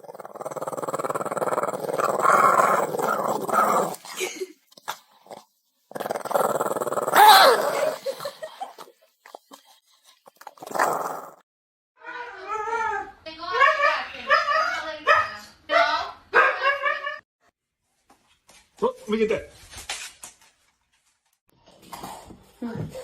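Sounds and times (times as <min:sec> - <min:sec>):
dog growling: 0:00.0 - 0:04.1, 0:04.9 - 0:09.6, 0:10.3 - 0:11.4
dog's high cry: 0:07.1 - 0:07.8.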